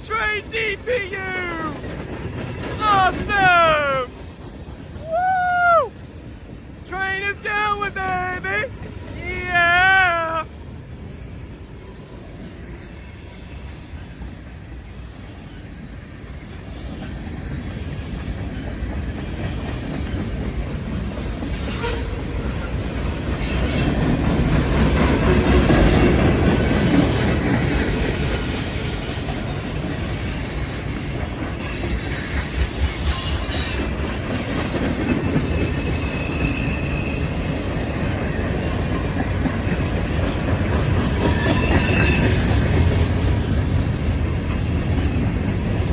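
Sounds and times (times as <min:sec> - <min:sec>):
train cars clattering: 0:00.0 - 0:45.9
train wheels rumbling on rail: 0:00.0 - 0:45.9.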